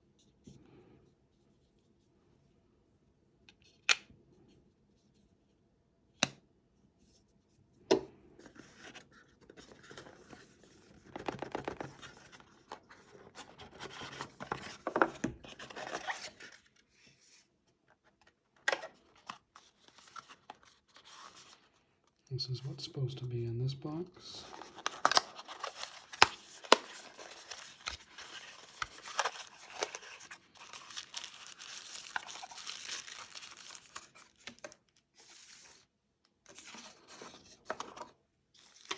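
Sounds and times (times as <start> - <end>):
packaging scratching and rustling: 24.4 - 35.9.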